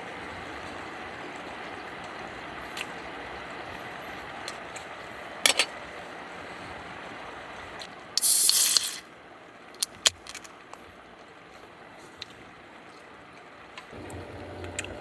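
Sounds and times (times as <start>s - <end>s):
loud hiss of spray: 8.2s - 9.1s.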